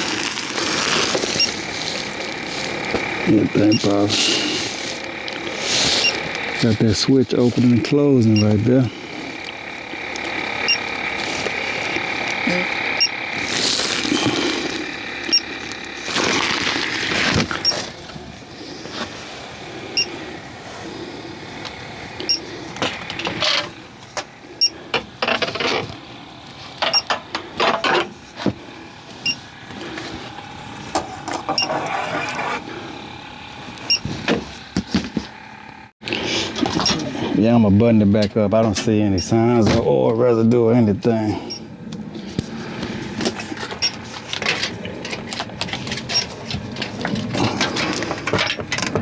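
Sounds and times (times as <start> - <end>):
clicks and rattles of tools: 43.2 - 49.0.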